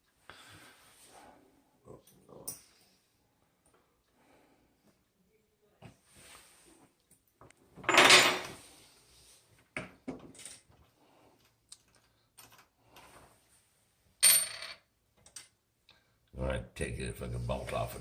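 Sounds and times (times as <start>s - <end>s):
metal faucet parts clattering: 7.8s - 8.6s.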